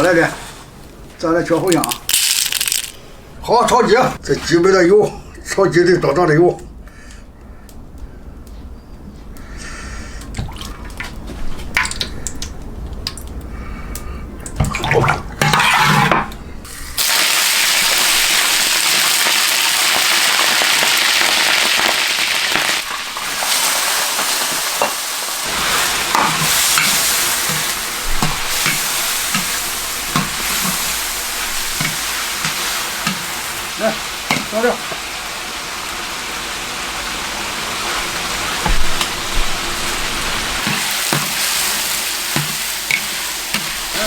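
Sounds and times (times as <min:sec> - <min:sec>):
chicken sizzling in hot oil: 0:16.8 - 0:44.0
spatula knocking and scraping wok: 0:24.8 - 0:33.4, 0:34.2 - 0:34.6, 0:40.6 - 0:44.0.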